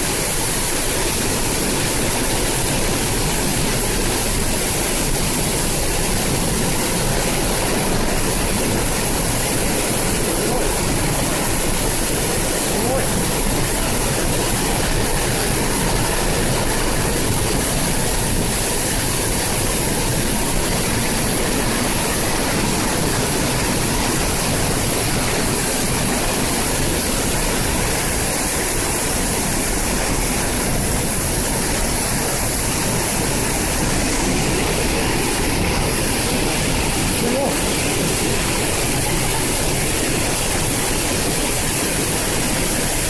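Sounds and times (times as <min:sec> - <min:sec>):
waterfall rushing: 0:00.0 - 0:43.0.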